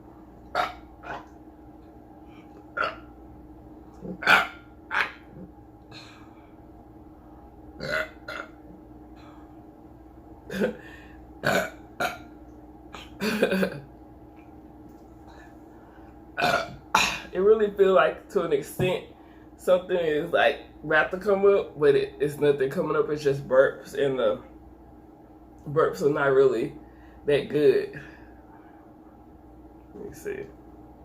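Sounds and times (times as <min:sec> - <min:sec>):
man burping: 0:04.0 - 0:05.1, 0:07.8 - 0:08.6, 0:10.5 - 0:12.3, 0:13.0 - 0:13.9, 0:16.4 - 0:17.3.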